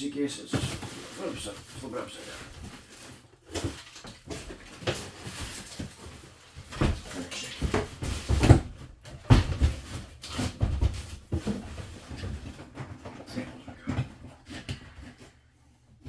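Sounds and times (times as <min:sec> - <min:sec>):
rustling and scraping: 0:00.3 - 0:16.0
knocks and thumps: 0:03.5 - 0:15.3.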